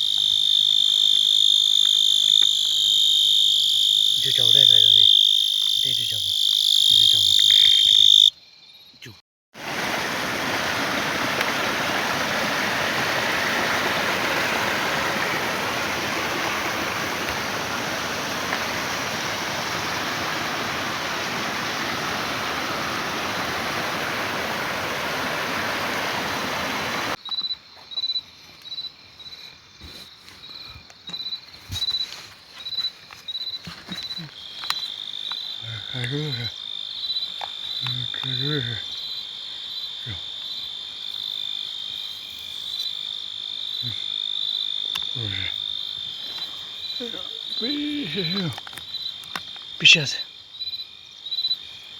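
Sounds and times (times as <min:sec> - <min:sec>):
insect pulsing chirp and trill: 0:00.0 - 0:09.2, 0:11.9 - 0:51.9
short low calls: 0:47.0 - 0:48.6.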